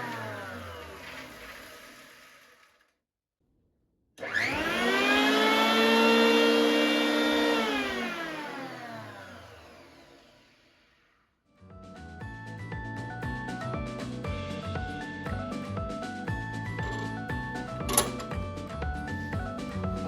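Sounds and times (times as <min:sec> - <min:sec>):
jointer motor whine: 0:00.0 - 0:02.8, 0:04.2 - 0:10.9.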